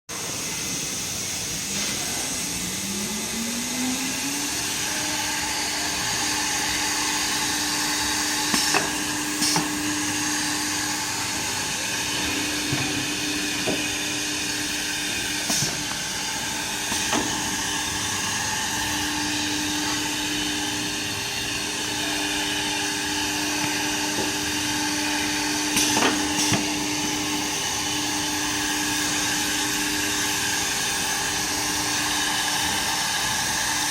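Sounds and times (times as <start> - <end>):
drilling machine motor whine: 2.2 - 33.9.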